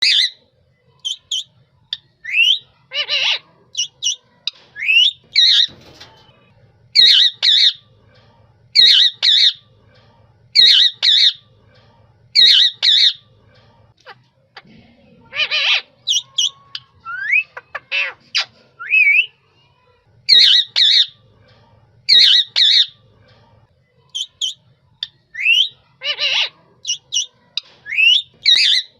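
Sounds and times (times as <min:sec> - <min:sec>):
parrot squawking: 0:00.0 - 0:00.4, 0:02.2 - 0:04.2, 0:04.8 - 0:05.8, 0:07.0 - 0:07.8, 0:08.8 - 0:09.6, 0:10.6 - 0:11.4, 0:12.4 - 0:13.2, 0:15.3 - 0:19.3, 0:20.3 - 0:21.2, 0:22.1 - 0:23.0, 0:24.2 - 0:28.9
parrot whistled calls: 0:10.6 - 0:11.4, 0:12.4 - 0:13.2, 0:15.4 - 0:18.2.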